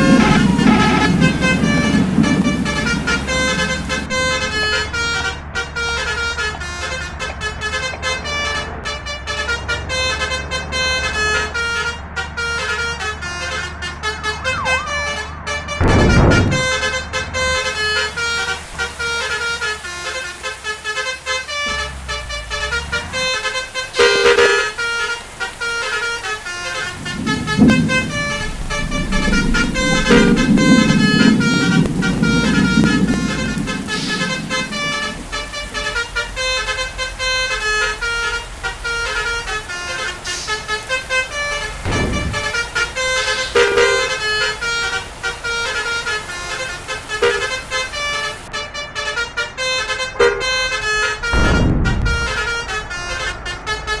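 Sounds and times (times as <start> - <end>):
low rumble: 0.0 - 5.2, 14.2 - 17.7, 26.6 - 37.0, 41.3 - 43.3, 51.3 - 53.0
bus engine running: 0.0 - 54.0
musical bus horn playing a tune: 0.0 - 54.0.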